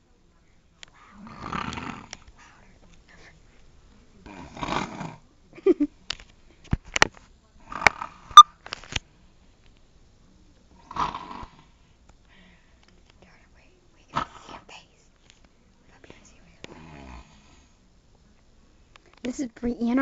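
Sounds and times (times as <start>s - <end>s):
person snoring: 1.1s - 2.2s, 4.3s - 5.2s, 10.8s - 11.8s, 16.7s - 17.8s.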